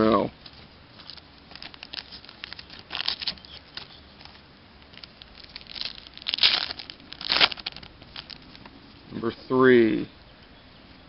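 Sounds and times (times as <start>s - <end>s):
card pack wrapper crinkling and tearing: 0.5s - 8.6s.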